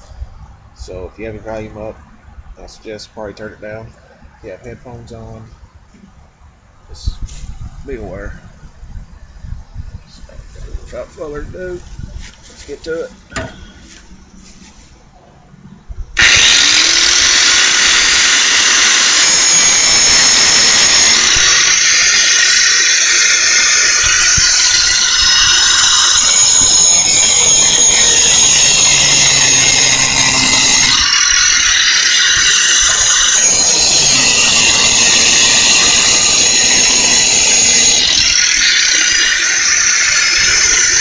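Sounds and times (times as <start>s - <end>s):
angle grinder grinding metal: 16.2s - 41.0s.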